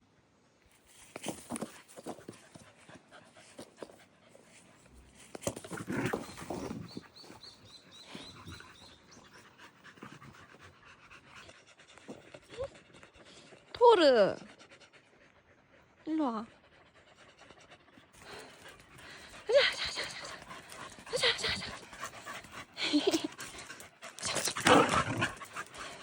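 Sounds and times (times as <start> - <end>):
dog panting: 5.9 - 26.0.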